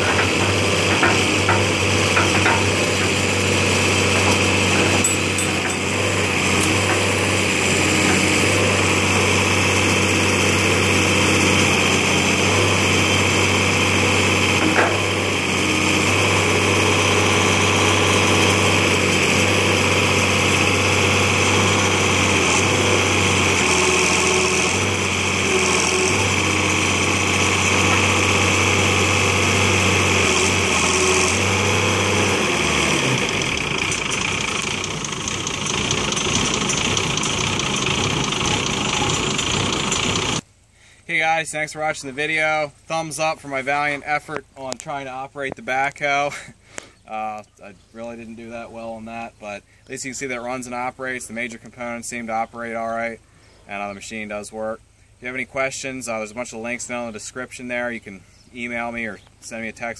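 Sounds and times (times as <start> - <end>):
backhoe engine running: 0.0 - 40.5.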